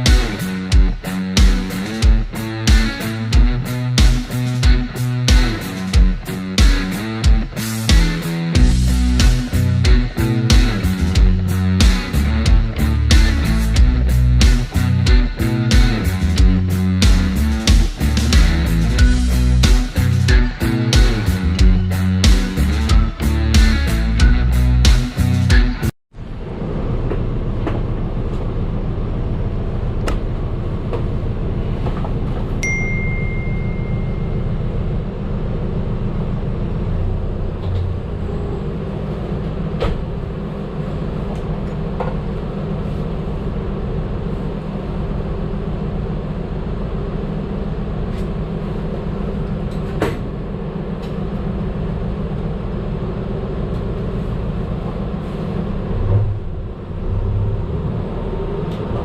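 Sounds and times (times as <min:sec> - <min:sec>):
bus engine rumbling: 0:00.0 - 0:59.0
short single-tone beep: 0:32.6 - 0:34.5.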